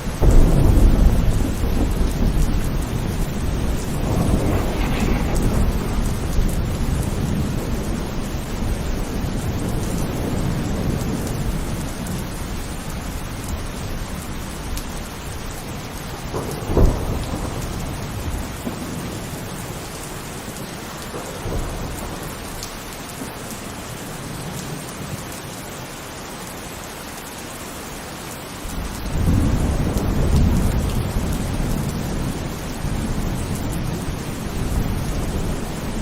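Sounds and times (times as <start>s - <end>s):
low rumble of thunder: 0.0s - 25.2s, 28.7s - 36.0s
heavy rain falling: 0.0s - 36.0s
loud thunder crack: 0.2s - 12.3s, 16.1s - 19.8s, 28.7s - 36.0s.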